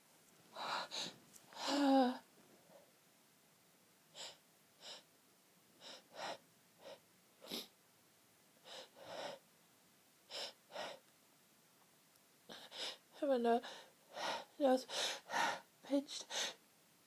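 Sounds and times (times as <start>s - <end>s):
person's hitching breaths: 0.5s - 2.2s.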